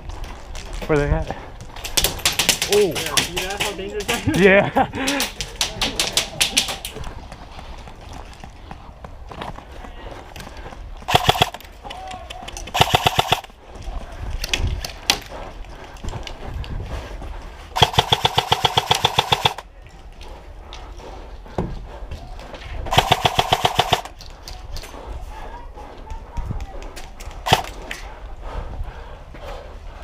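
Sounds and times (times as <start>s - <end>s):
airsoft gun firing bursts: 11.1s - 11.6s, 12.7s - 13.6s, 17.8s - 19.6s, 22.9s - 24.2s, 27.5s - 27.8s.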